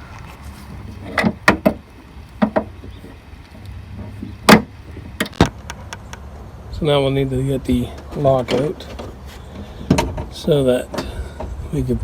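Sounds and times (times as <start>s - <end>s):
trunk lid and latch clicking: 4.4s - 6.2s.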